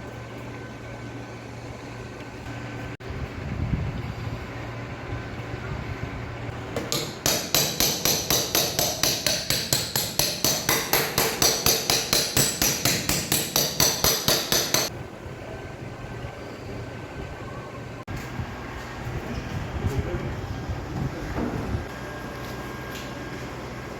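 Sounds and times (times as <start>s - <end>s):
small hammer tapping metal panel: 6.8s - 14.9s.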